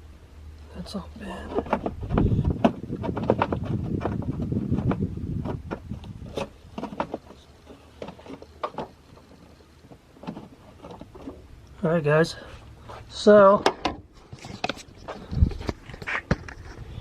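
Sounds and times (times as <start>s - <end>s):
airbox knocking and clattering: 1.3s - 11.5s, 13.5s - 16.8s.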